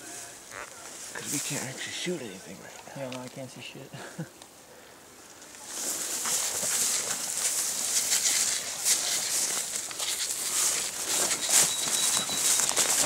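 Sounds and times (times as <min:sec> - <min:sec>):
footsteps crunching dry leaves: 0:05.5 - 0:13.0.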